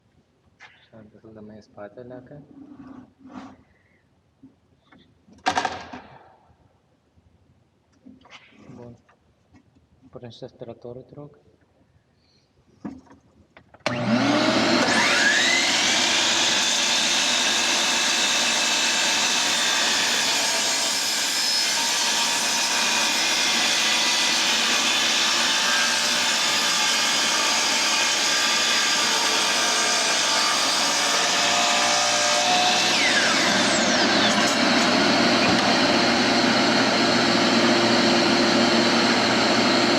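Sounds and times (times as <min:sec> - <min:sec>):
vacuum cleaner motor whine: 0:13.9 - 0:39.9.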